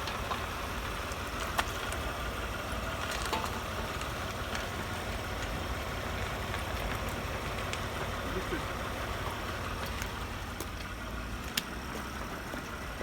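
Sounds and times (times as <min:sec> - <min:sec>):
vehicle running noise: 0:00.0 - 0:13.0
suspension clicks: 0:02.8 - 0:08.2.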